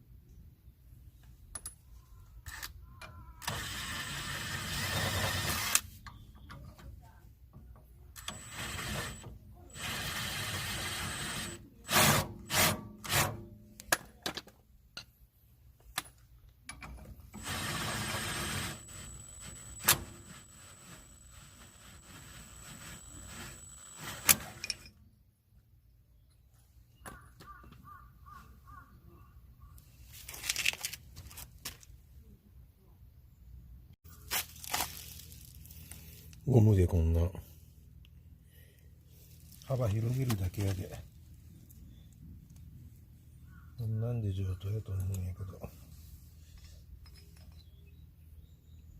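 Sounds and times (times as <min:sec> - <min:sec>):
power tool whining: 0:03.4 - 0:05.8, 0:08.2 - 0:13.2, 0:17.3 - 0:24.9
short noisy bursts: 0:17.4 - 0:24.6.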